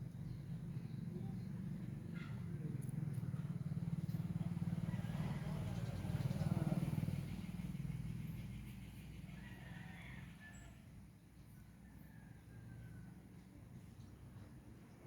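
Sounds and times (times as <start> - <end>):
vehicle engine passing by: 3.6 - 9.2.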